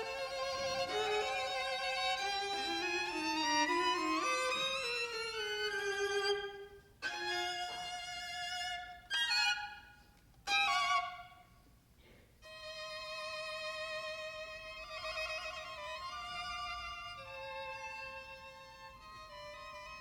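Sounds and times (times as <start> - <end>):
solo violin playing: 0.0 - 11.5, 12.4 - 20.0.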